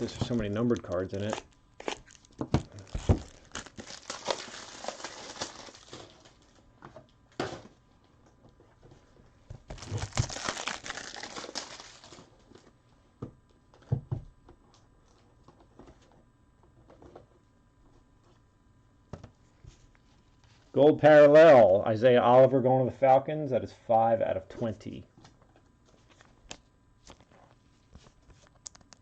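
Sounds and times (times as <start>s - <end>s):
plastic and card crinkling: 0.0s - 6.6s, 9.5s - 12.8s, 25.2s - 29.0s.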